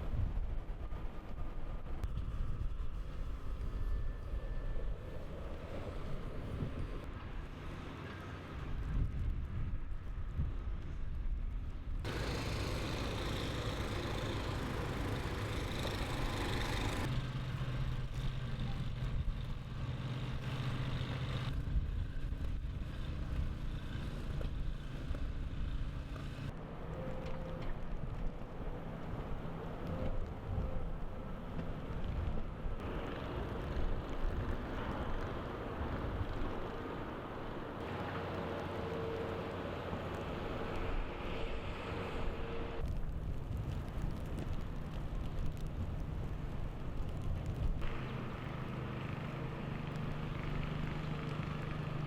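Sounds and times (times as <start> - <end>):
engine hum: 11.9 - 52.0.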